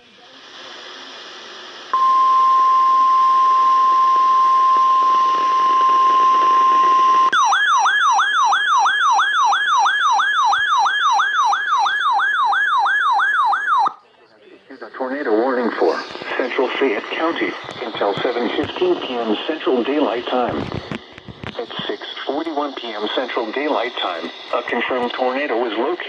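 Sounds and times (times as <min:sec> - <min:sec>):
steady alarm tone: 0:01.9 - 0:13.9
warbling siren-like alarm: 0:04.5 - 0:13.9.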